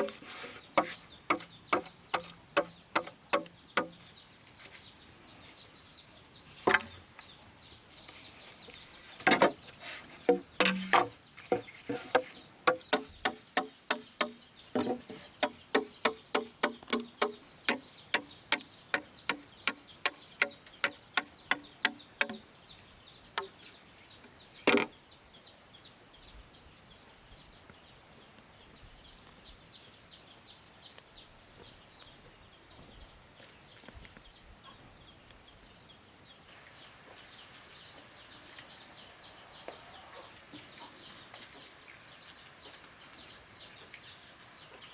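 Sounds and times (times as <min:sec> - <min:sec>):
rhythmic chopping: 0:12.1 - 0:22.4.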